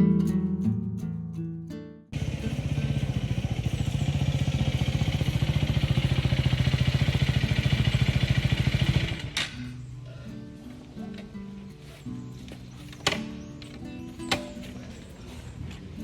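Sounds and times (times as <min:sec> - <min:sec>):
motorcycle engine idling: 0:02.2 - 0:10.0.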